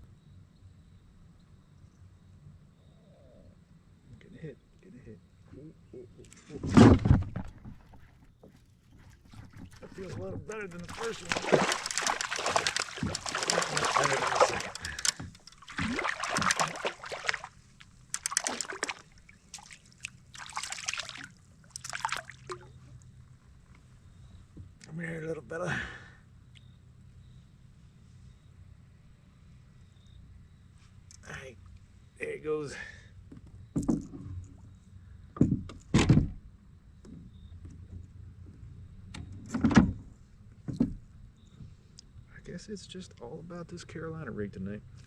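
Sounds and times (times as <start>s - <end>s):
water splashing and sloshing: 6.8s - 23.2s.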